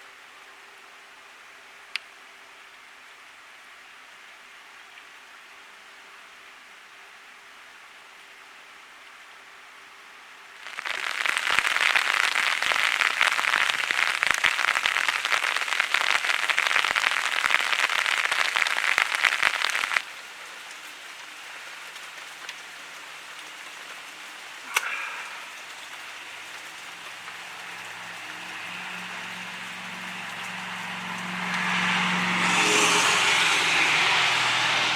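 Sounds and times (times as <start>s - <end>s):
heavy rain falling: 10.5s - 34.9s.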